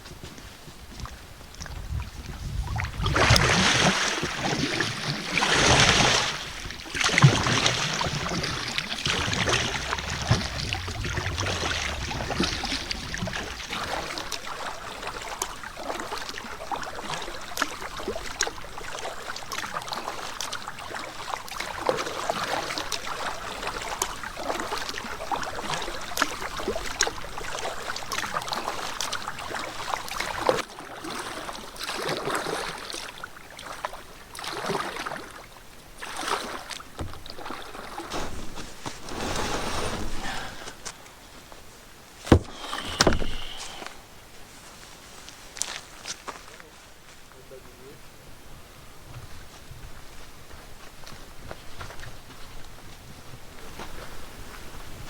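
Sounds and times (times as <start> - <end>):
wind on microphone: 0.0 - 15.8, 42.4 - 44.0
water splashing from paddling: 1.0 - 41.0, 42.2 - 44.0.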